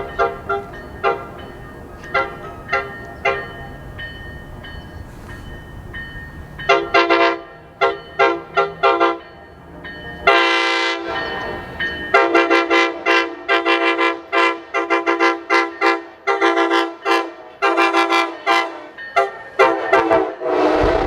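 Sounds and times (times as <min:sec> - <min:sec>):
train air horn: 0:06.7 - 0:09.2, 0:10.2 - 0:21.0.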